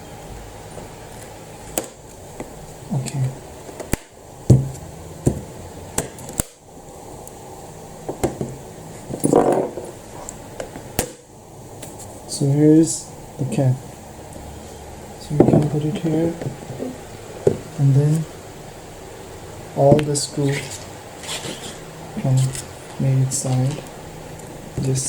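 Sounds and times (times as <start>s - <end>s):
dull thuds: 4.5s - 5.5s.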